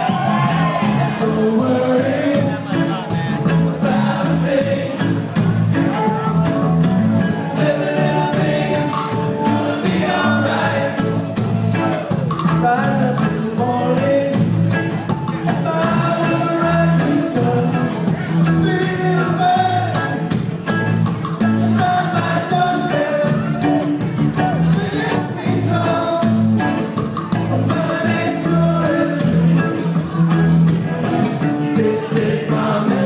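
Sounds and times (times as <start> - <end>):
person singing: 0.0 - 20.3, 21.4 - 30.3
reggae band playing: 0.0 - 33.0.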